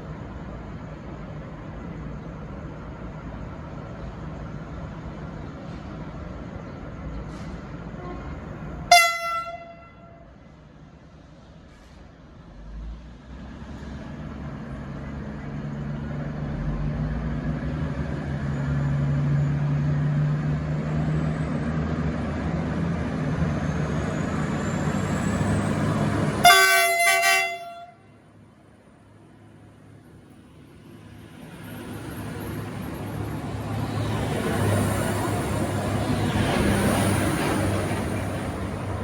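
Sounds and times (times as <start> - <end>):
diesel train engines: 0.0 - 39.0
train horn blast: 8.0 - 10.3, 26.4 - 28.1.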